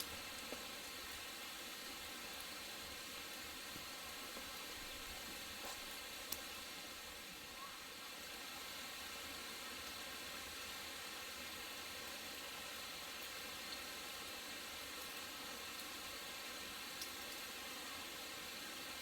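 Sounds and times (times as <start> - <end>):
faint ticks: 5.1 - 6.6, 17.0 - 17.4.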